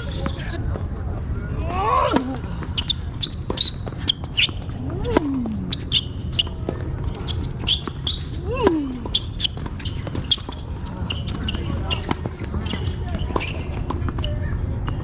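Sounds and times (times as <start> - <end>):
shoes squeaking on court: 0.0 - 0.6, 2.5 - 15.0.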